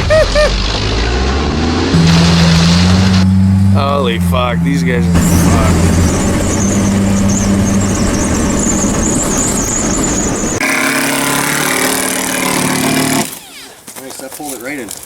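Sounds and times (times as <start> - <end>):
motor running loudly: 2.0 - 13.6.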